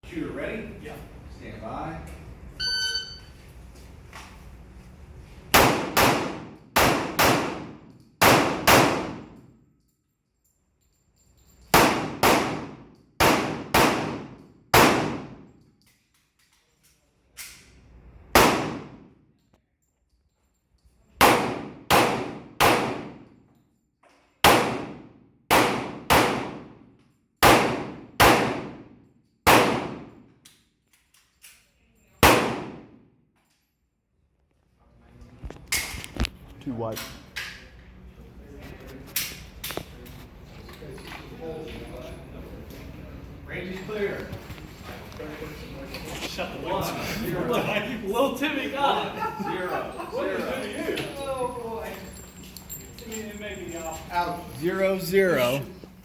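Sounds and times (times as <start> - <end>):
shot timer beep: 2.6 - 3.3
pistol shots: 5.5 - 9.4, 11.7 - 15.5, 18.3 - 19.1, 21.2 - 23.3, 24.4 - 26.8, 27.4 - 30.2, 32.2 - 33.0.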